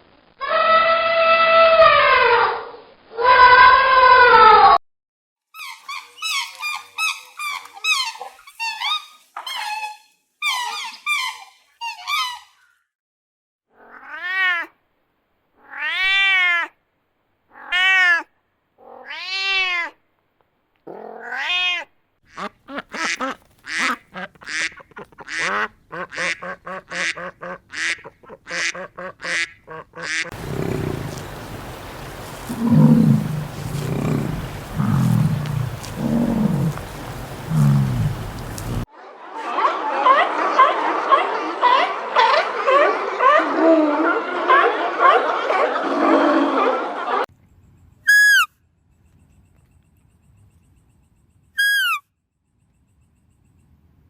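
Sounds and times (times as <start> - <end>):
high chirping calls: 30.3 - 38.8
cat meowing: 30.4 - 38.8.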